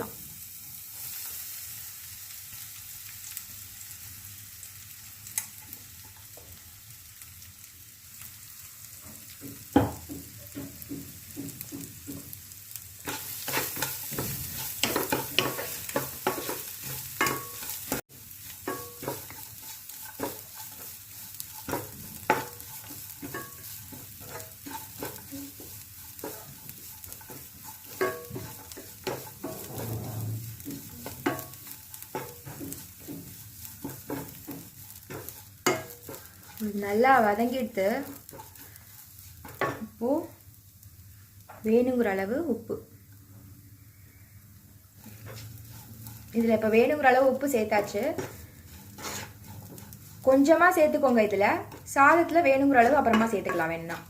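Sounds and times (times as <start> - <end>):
paste sizzling in a pan: 0.0 - 42.6, 43.7 - 54.0
spoon scraping and knocking pan: 9.0 - 39.9, 45.0 - 54.0.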